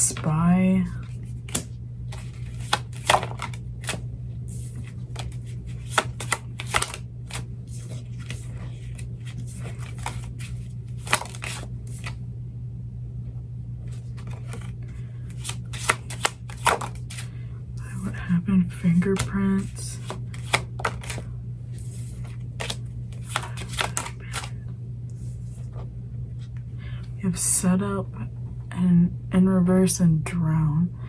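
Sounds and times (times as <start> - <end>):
low hum: 0.0 - 31.0
cards shuffled and laid down: 1.0 - 12.2, 13.9 - 14.7, 15.3 - 17.3, 18.9 - 24.6.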